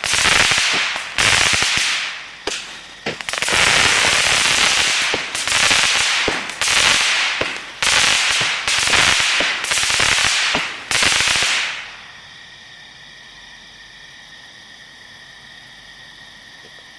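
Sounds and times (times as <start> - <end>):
firework shots: 0.0 - 12.2
firework crackle: 0.0 - 12.3.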